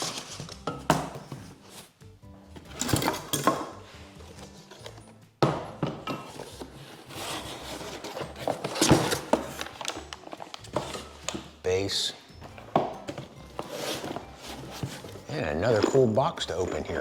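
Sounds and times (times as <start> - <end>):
metal tubes knocking and clinking: 4.7 - 6.6, 14.8 - 17.0.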